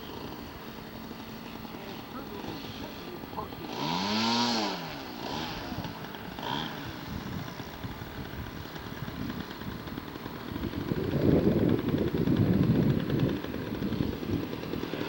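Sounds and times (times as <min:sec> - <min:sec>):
model aircraft engine running: 0:00.0 - 0:15.0
wind buffeting microphone: 0:05.2 - 0:15.0.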